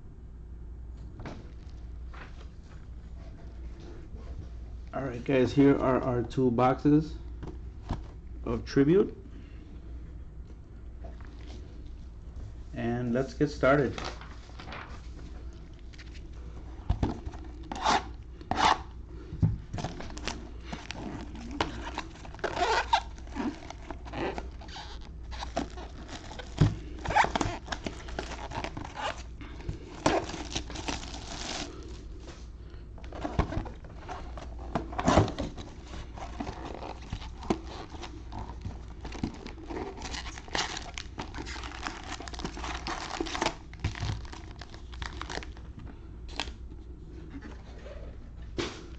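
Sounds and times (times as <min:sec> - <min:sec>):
packaging being torn open: 0:19.8 - 0:31.9, 0:36.2 - 0:45.6.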